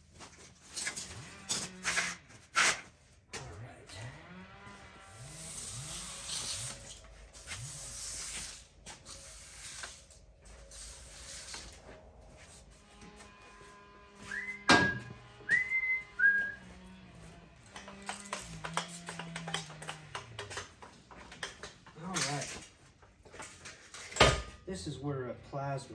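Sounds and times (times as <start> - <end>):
short whistled notes: 14.3 - 16.6.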